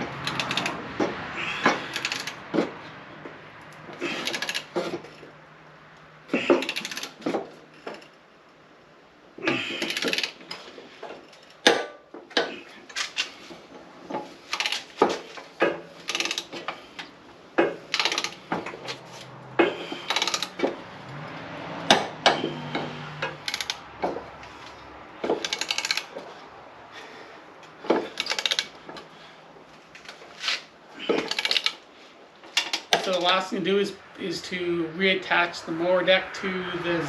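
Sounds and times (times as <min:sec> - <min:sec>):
metal rattling: 0:00.0 - 0:05.4, 0:09.5 - 0:26.5, 0:27.7 - 0:29.1, 0:29.8 - 0:33.5.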